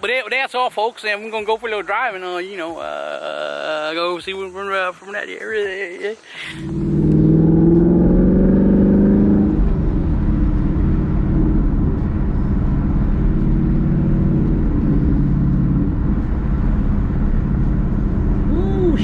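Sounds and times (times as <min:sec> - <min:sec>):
car engine rumble from inside cabin: 0:06.6 - 0:19.0.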